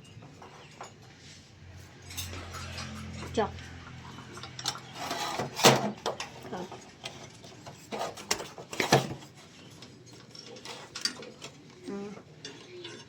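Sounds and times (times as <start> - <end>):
metal tools clinking and knocking: 2.0 - 3.4.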